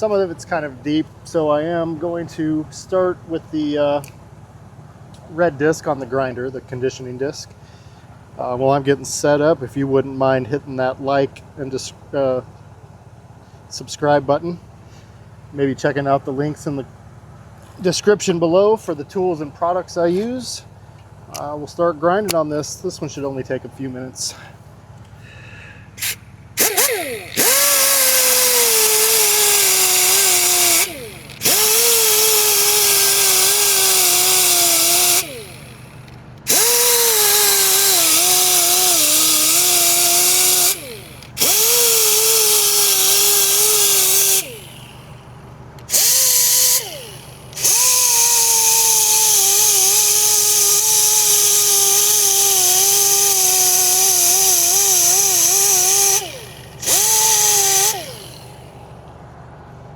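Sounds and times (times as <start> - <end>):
grinder whining on metal: 26.0 - 59.0.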